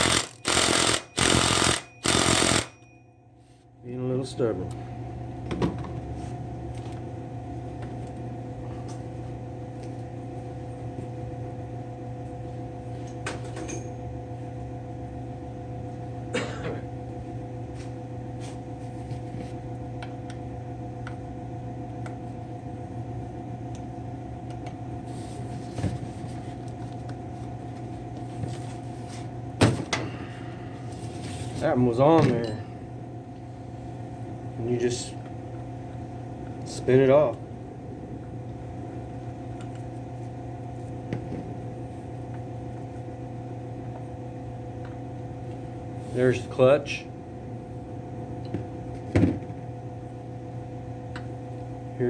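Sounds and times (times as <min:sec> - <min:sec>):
motor hum: 0:00.0 - 0:02.9.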